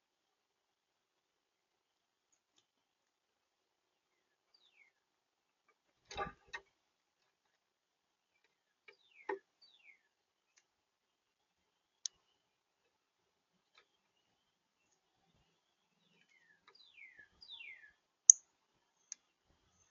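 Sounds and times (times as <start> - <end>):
whistled bird notes: 15.5 - 18.0.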